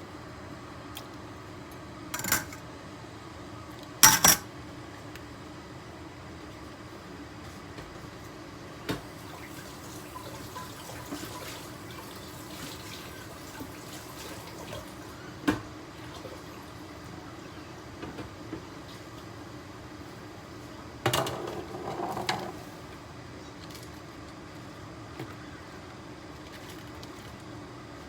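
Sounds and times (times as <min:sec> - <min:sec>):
water boiling in pot: 0:08.9 - 0:23.2.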